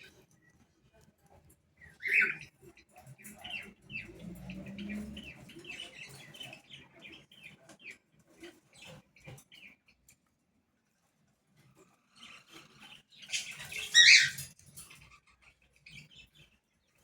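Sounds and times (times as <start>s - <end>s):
small animals chirping: 13.2s - 16.3s.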